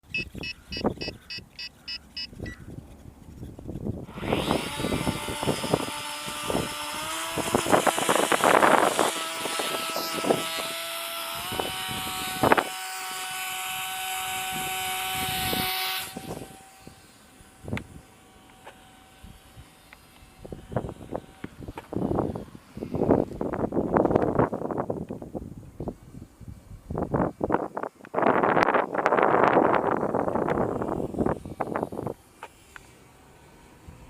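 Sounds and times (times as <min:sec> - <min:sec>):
short electronic beeps: 0:00.0 - 0:02.6
electric motor and propeller whine: 0:00.0 - 0:34.0.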